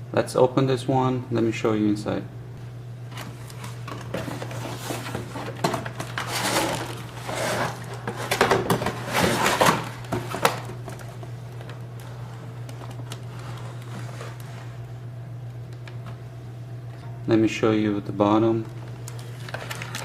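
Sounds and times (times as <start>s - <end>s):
steady low hum: 0.0s - 20.0s
cardboard box rustling and scraping: 3.6s - 10.6s, 13.3s - 14.8s.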